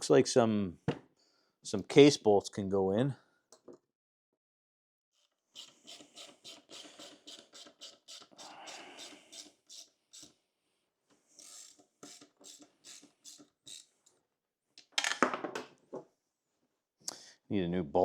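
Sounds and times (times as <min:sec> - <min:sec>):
socket ratchet clicking: 0:05.6 - 0:10.3, 0:11.4 - 0:13.9.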